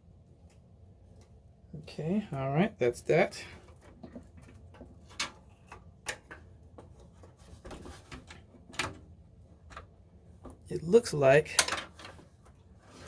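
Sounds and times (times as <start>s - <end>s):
clicks and taps handling computer parts: 3.6s - 10.7s, 11.5s - 12.6s.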